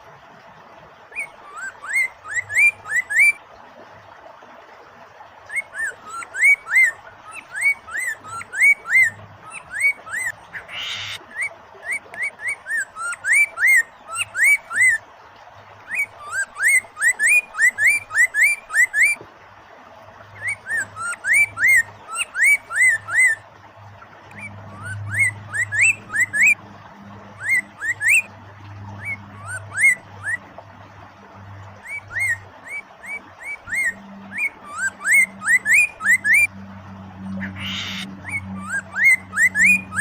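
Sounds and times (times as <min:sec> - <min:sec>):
bird whistling rising notes: 0:01.2 - 0:03.4, 0:05.5 - 0:15.0, 0:20.4 - 0:23.4, 0:24.3 - 0:26.6, 0:27.4 - 0:28.3, 0:29.0 - 0:30.4, 0:31.8 - 0:36.6, 0:37.4 - 0:40.0.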